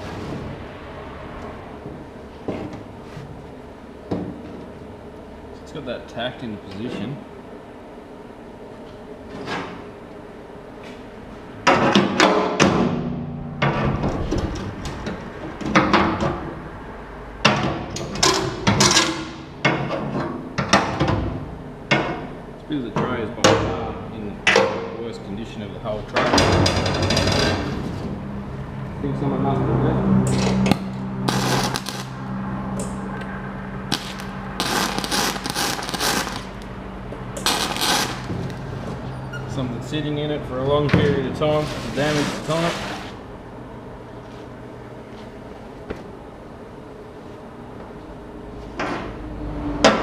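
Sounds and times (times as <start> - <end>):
steady low hum: 0.0 - 50.0
welder arc crackling: 31.2 - 33.0, 33.8 - 36.8, 37.4 - 38.7.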